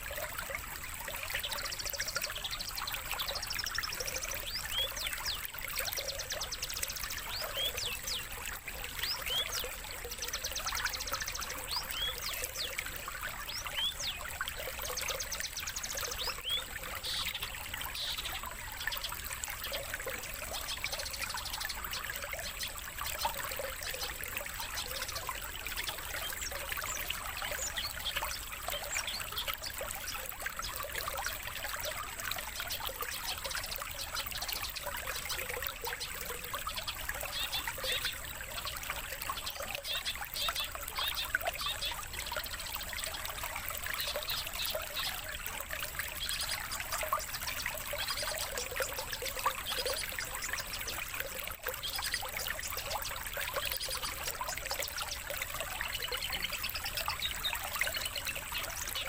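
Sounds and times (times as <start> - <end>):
trickling water: 0.0 - 59.0
songbird chirps and twitters: 1.1 - 59.0.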